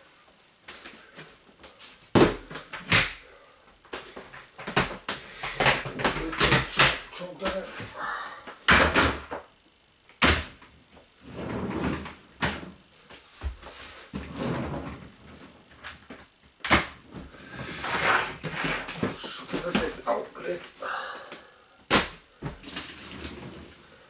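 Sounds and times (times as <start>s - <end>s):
boxes knocking and bumping: 4.1s - 7.1s
scraping and rustling: 17.2s - 20.0s.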